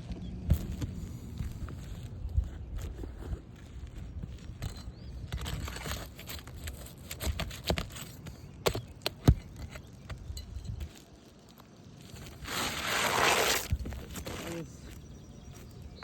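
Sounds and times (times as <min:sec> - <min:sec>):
scraping on shingles: 0:05.3 - 0:10.2, 0:10.8 - 0:14.9.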